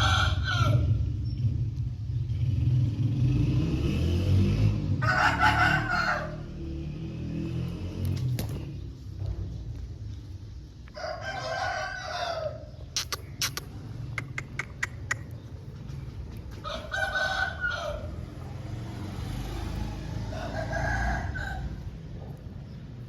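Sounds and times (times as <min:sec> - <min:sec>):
rooster crowing: 0:00.0 - 0:01.0, 0:05.0 - 0:06.7, 0:11.0 - 0:12.7, 0:16.6 - 0:18.8, 0:19.7 - 0:21.9
sharp clicks: 0:13.0 - 0:15.4.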